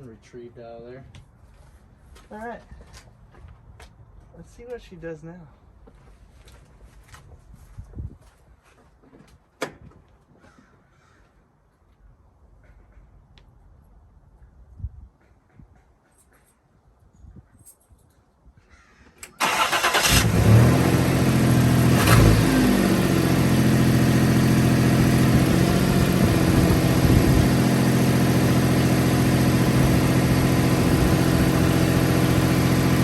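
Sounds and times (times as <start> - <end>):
car engine starting and idling: 19.2 - 33.0
engine revving: 19.4 - 33.0.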